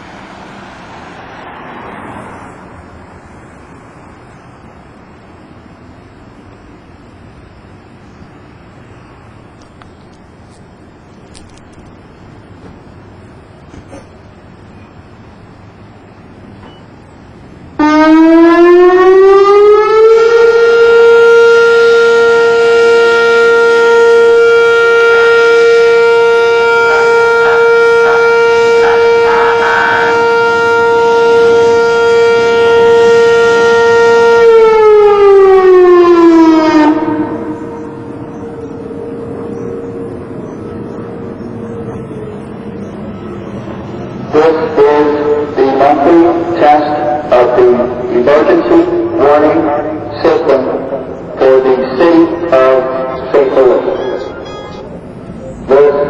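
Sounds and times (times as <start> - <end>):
warning siren: 14.4 - 56.0.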